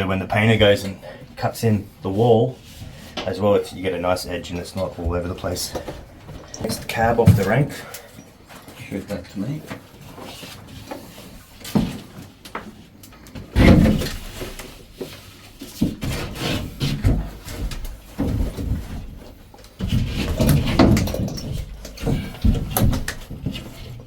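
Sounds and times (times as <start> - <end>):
plasterboard sheet knocking and scraping: 13.6 - 24.0.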